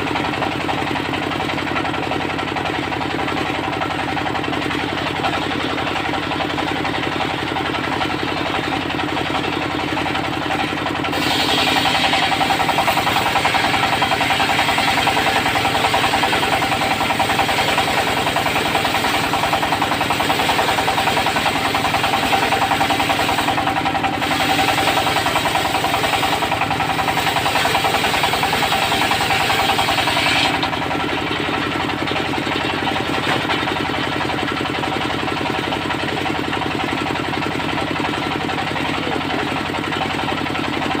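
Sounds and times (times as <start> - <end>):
diesel engine knocking: 0.0 - 41.0
saw blade cutting wood: 10.5 - 31.5.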